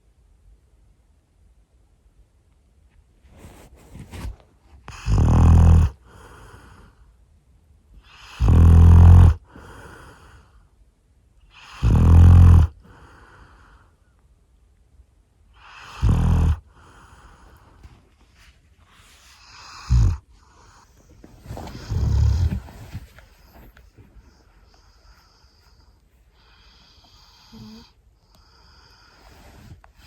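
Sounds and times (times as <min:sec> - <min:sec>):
dog snoring: 0:04.9 - 0:06.9, 0:08.0 - 0:10.4, 0:11.5 - 0:13.4, 0:15.6 - 0:17.4, 0:19.4 - 0:30.0
soft breath out: 0:16.7 - 0:30.0.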